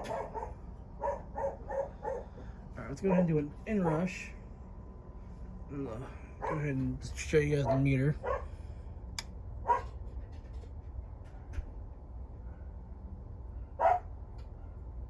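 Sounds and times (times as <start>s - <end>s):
dog barking: 0.0s - 2.4s, 3.1s - 3.3s, 6.4s - 6.7s, 7.6s - 8.5s, 9.6s - 10.0s, 13.8s - 14.1s
steady low hum: 0.0s - 15.0s.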